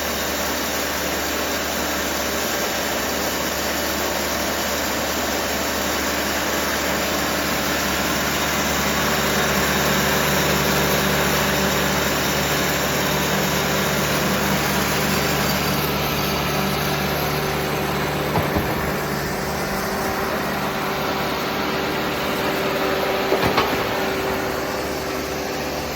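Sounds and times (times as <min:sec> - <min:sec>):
diesel engine running: 0:00.2 - 0:25.9
brief knocks: 0:18.3 - 0:20.6, 0:23.2 - 0:24.7.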